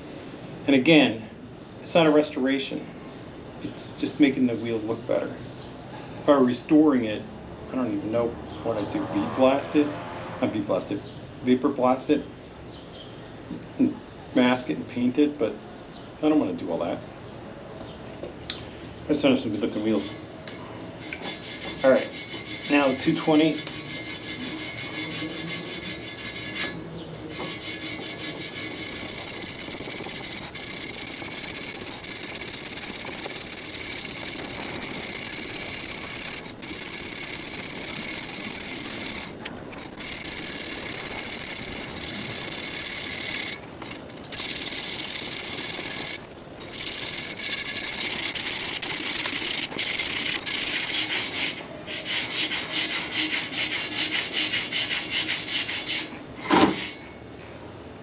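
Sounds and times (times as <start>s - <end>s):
sandpaper rubbing on metal: 21.0s - 46.2s, 46.8s - 56.2s.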